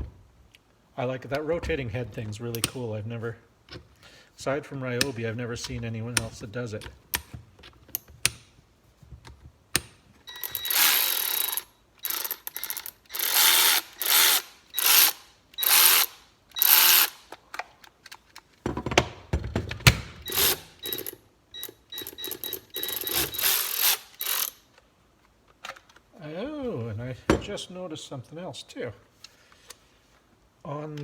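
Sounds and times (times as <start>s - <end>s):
ratchet clicks: 10.3s - 17.2s, 20.2s - 24.6s
cordless ratchet motor whirring: 10.4s - 17.2s, 20.2s - 21.2s, 22.0s - 24.6s.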